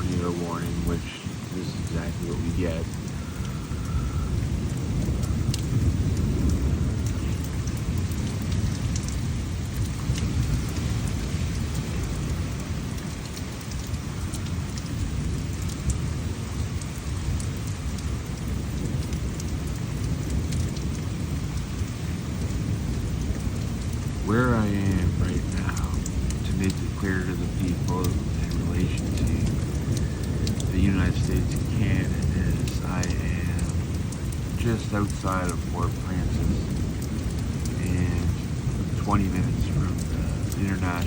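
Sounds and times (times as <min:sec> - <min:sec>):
faint hiss: 0:00.0 - 0:09.6, 0:10.2 - 0:41.0
thunder rumbling: 0:00.0 - 0:41.0
sharp ticks: 0:25.4 - 0:41.0.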